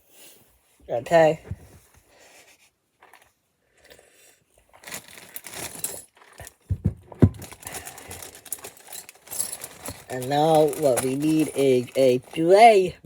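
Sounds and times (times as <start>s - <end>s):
plastic pieces rattling: 4.8s - 13.0s
dull knocks: 6.7s - 7.6s.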